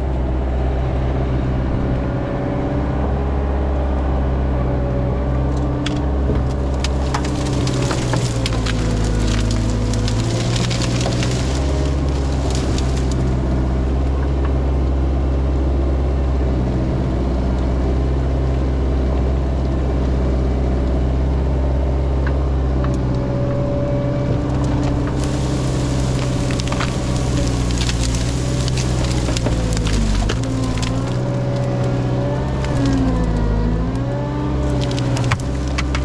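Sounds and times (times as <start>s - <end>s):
diesel engine running: 0.0s - 36.0s
brush and wood snapping: 5.8s - 13.5s, 24.4s - 36.0s.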